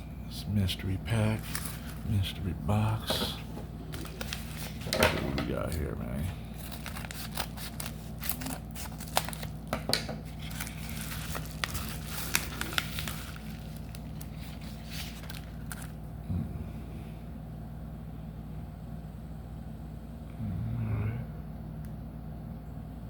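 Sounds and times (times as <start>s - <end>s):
steady low hum: 0.0s - 23.0s
packaging crinkling and tearing: 1.1s - 3.0s, 3.8s - 16.1s.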